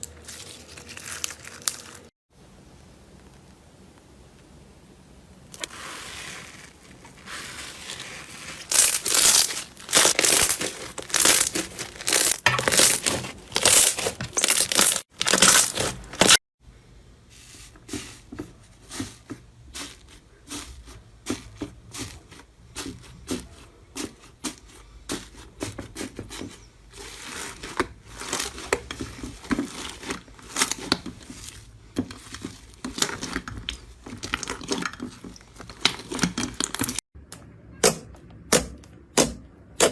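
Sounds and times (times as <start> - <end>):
slime squished by hand: 5.6 - 16.4.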